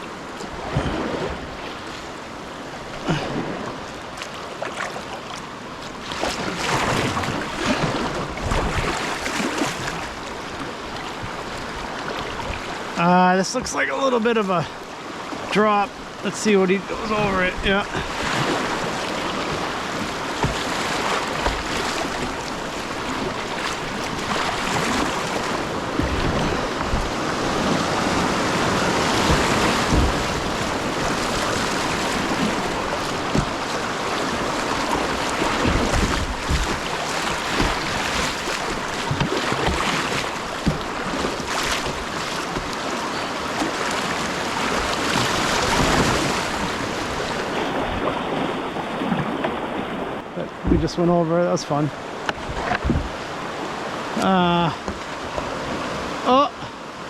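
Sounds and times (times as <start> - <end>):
low knocks and splashes: 0.4 - 2.1, 2.9 - 13.9, 16.9 - 51.1, 51.8 - 53.4
river rapids rushing: 5.4 - 48.0.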